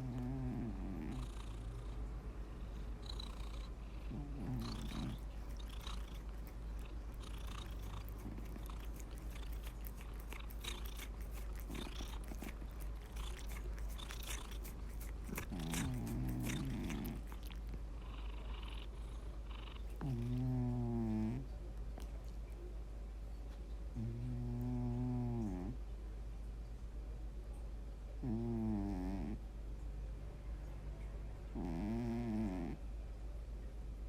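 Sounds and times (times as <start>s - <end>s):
cat snoring: 0.0s - 21.5s, 24.0s - 25.8s, 28.2s - 29.4s, 31.6s - 32.8s.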